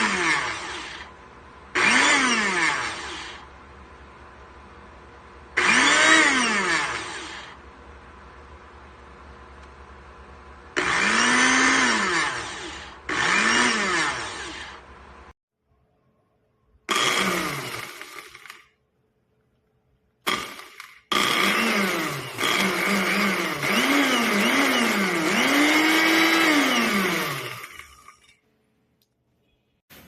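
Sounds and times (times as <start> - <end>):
electric blender motor: 0.0 - 1.1, 1.8 - 3.5, 5.6 - 7.6, 10.7 - 15.0, 16.9 - 18.7, 20.3 - 28.3.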